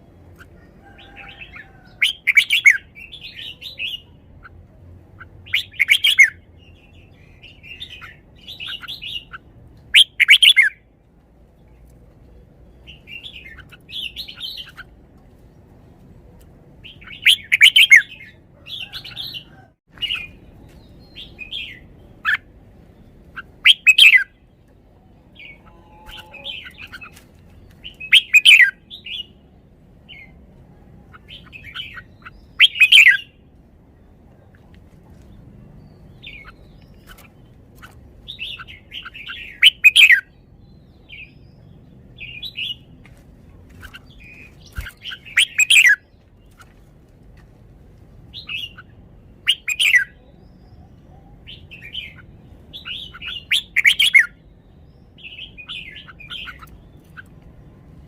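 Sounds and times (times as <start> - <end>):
bulbul singing: 5.2 - 10.9, 16.8 - 24.6, 25.2 - 29.4, 31.1 - 33.4, 35.8 - 42.9, 43.8 - 46.1, 48.3 - 57.4
quiet bird chirps: 48.3 - 58.0.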